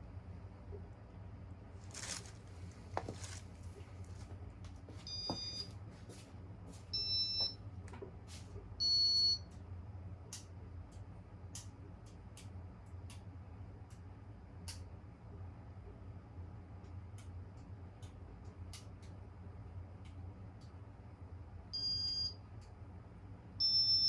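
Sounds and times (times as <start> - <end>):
short electronic beeps: 5.1 - 5.7.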